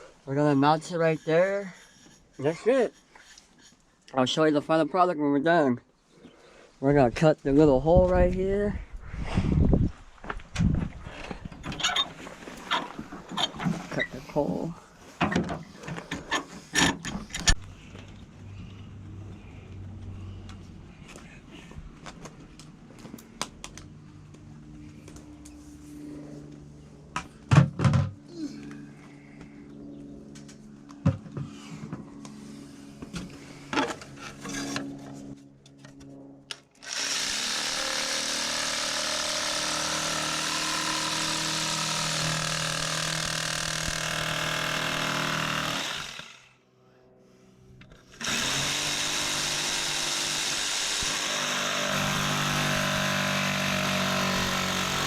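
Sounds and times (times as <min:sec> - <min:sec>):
power tool running at high speed: 0:36.8 - 0:46.6, 0:48.0 - 0:55.0.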